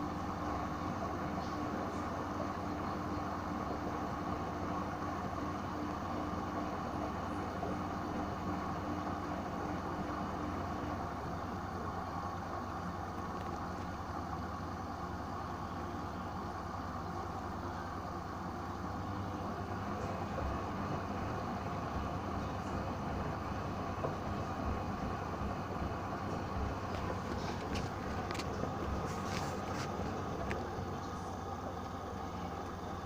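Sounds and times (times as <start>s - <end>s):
washing machine motor hum: 0.0s - 33.0s.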